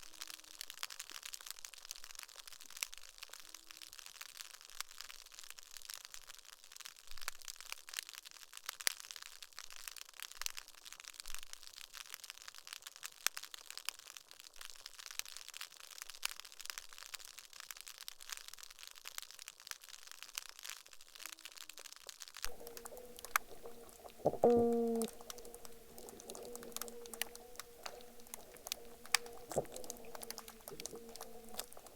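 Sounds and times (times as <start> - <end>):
low two-tone call: 22.5 - 31.8
snapping shrimp crackling underwater: 22.5 - 31.9.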